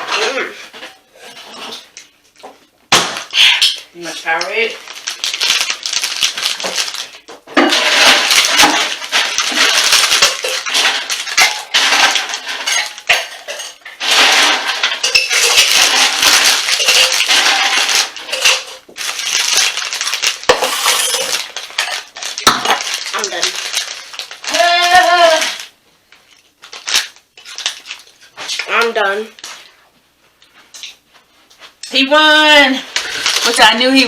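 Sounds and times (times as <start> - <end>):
chip bag crinkling and rustling: 4.0 - 13.1, 14.0 - 29.6, 32.8 - 34.0.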